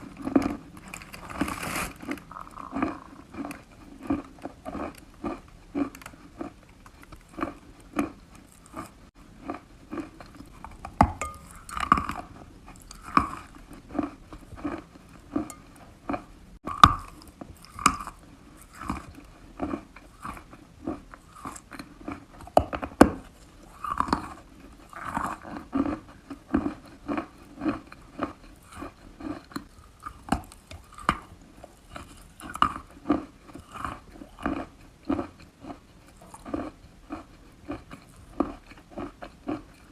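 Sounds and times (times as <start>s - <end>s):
moist crunching chewing: 0.0s - 39.9s.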